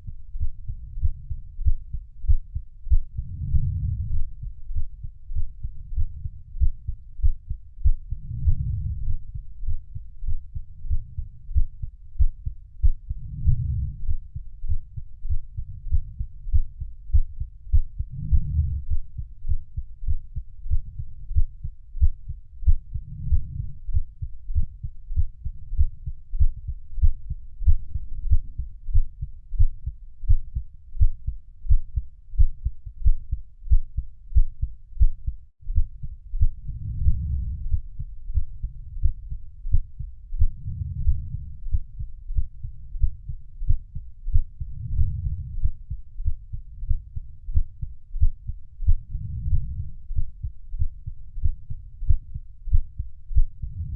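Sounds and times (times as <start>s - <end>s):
muffled heartbeat thumps: 0.0s - 53.9s.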